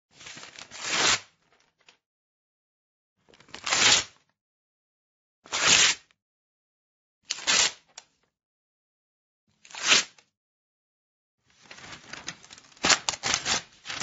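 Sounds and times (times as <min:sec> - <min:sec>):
paper tearing: 0:05.5 - 0:06.0, 0:07.3 - 0:07.8, 0:11.8 - 0:14.0.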